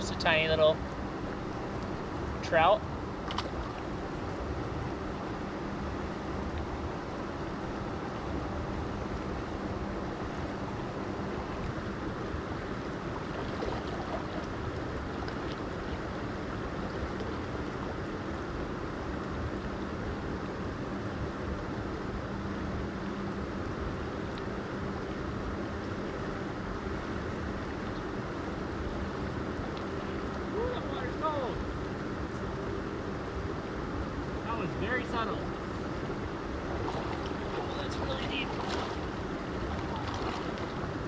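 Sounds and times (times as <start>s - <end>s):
creek rushing over rocks: 36.6s - 40.8s.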